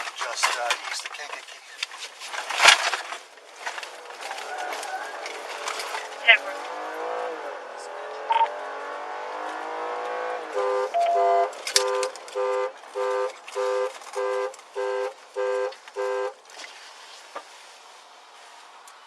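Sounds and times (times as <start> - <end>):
vehicle engine revving: 3.4 - 16.4
car horn honks: 10.1 - 16.5.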